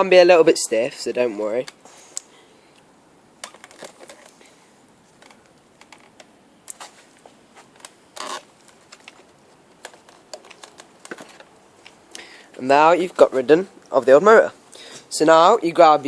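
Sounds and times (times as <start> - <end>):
parts clattering: 3.4 - 12.0.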